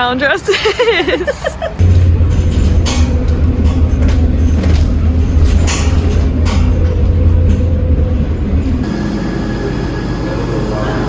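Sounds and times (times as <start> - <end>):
loud low mechanical rumble: 0.7 - 11.0
clicks and rattles: 1.8 - 8.1.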